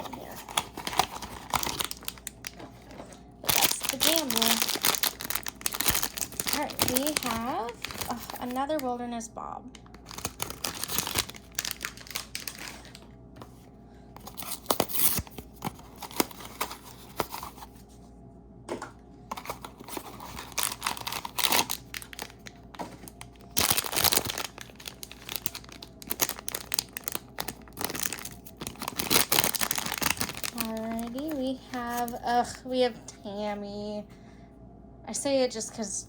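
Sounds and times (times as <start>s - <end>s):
wrapping crinkling: 0.0s - 9.0s, 9.8s - 13.5s, 14.2s - 17.8s, 19.3s - 32.6s
cardboard box tearing: 14.3s - 15.4s.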